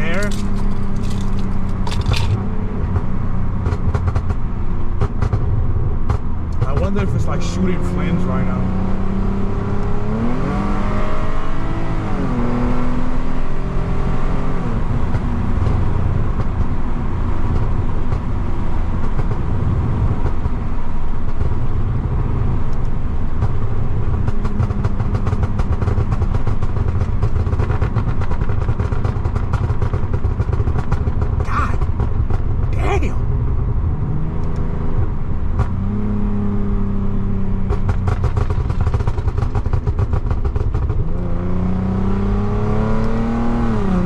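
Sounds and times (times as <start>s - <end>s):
exhaust crackles and pops: 0.0s - 7.2s, 15.0s - 32.8s, 37.6s - 41.1s.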